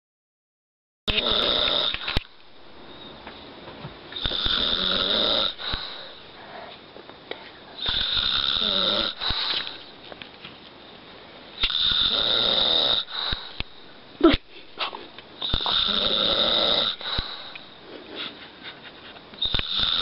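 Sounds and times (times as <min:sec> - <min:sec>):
man snoring: 0:01.1 - 0:02.2, 0:04.2 - 0:06.2, 0:07.8 - 0:09.8, 0:11.6 - 0:13.6, 0:15.4 - 0:17.6, 0:19.4 - 0:20.0.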